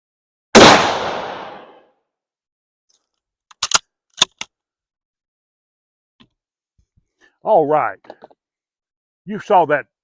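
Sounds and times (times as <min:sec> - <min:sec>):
rifle shot echo: 0:00.6 - 0:01.8
rifle bolt metallic clicks: 0:03.5 - 0:04.5.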